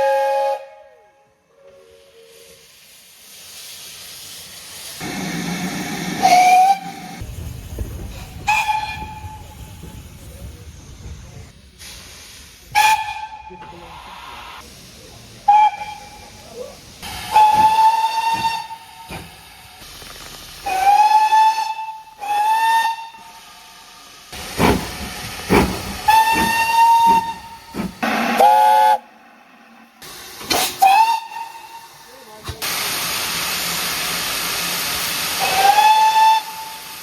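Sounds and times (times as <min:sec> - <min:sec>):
steam locomotive whistle blasts: 0:00.0 - 0:02.6, 0:05.4 - 0:07.2, 0:08.4 - 0:09.6, 0:12.7 - 0:13.6, 0:15.5 - 0:16.2, 0:17.1 - 0:19.1, 0:20.6 - 0:23.7, 0:26.1 - 0:29.1, 0:30.5 - 0:32.0, 0:35.4 - 0:37.0
steam hissing: 0:01.8 - 0:29.0, 0:29.7 - 0:37.0.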